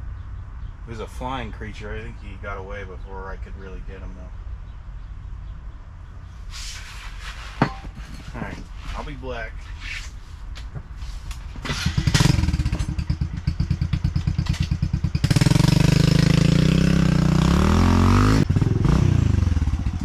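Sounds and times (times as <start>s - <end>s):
motorcycle engine: 11.5s - 20.0s.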